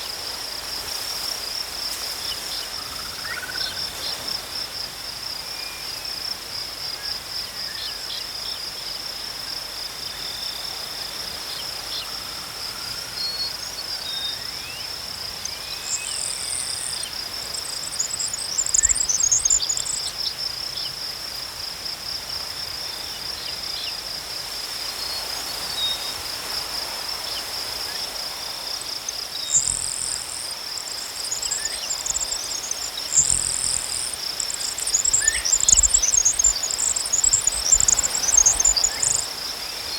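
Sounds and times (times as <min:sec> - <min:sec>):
wind in grass: 0:09.1 - 0:39.9
pulsing insect trill: 0:27.2 - 0:39.9.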